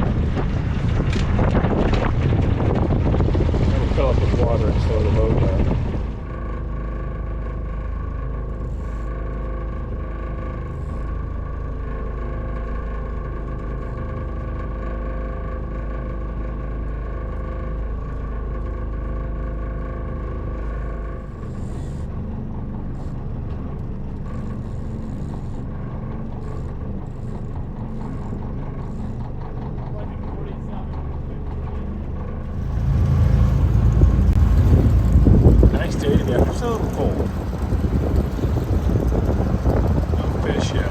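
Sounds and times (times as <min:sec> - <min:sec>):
boat engine rumbling: 0:00.0 - 0:16.4, 0:17.0 - 0:40.9.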